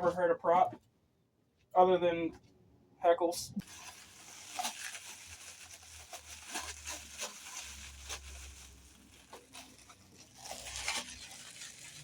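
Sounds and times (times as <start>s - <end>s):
plastic packaging crinkling: 3.6s - 12.0s.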